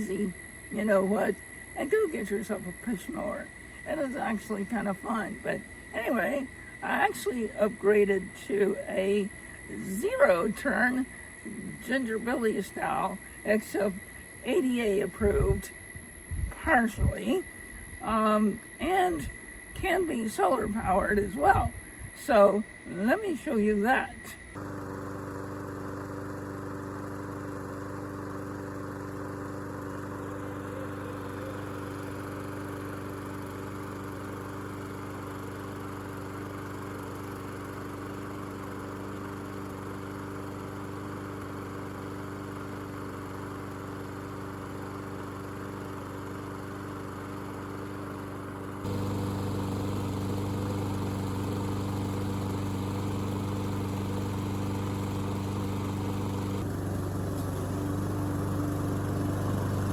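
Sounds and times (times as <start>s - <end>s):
lawn mower engine running: 0.0s - 10.4s, 24.6s - 59.9s.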